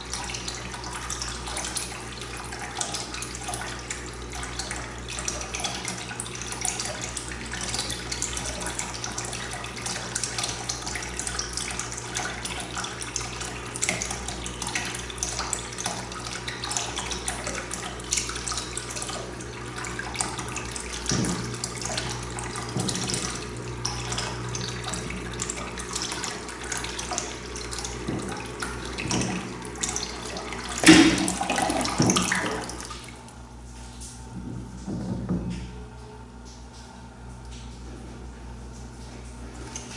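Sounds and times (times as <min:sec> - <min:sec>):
water splashing into a tank: 0:00.0 - 0:33.4
knock: 0:34.4 - 0:35.6.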